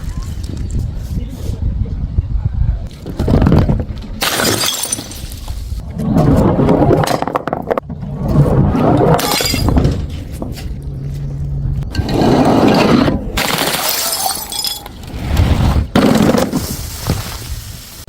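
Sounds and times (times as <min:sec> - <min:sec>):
breaking glass clattering: 0:04.2 - 0:05.6, 0:09.2 - 0:10.1, 0:13.4 - 0:15.0
glass bottles smashing: 0:04.2 - 0:05.6, 0:09.2 - 0:10.0, 0:13.4 - 0:15.0.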